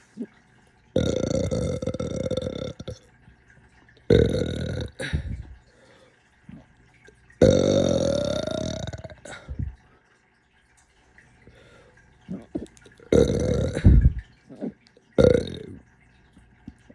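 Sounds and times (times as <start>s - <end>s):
person burping: 1.0s - 3.0s, 4.1s - 5.5s, 7.4s - 9.7s, 12.3s - 15.8s.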